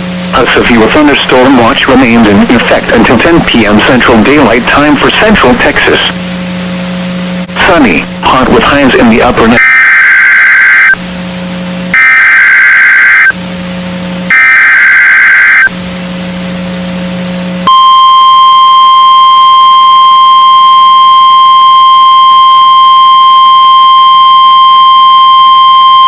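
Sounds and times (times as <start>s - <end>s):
steady warning alarm tone: 9.6s - 11.0s, 11.9s - 13.4s, 14.3s - 15.8s, 17.7s - 26.0s
buzzing data bursts: 14.3s - 15.7s.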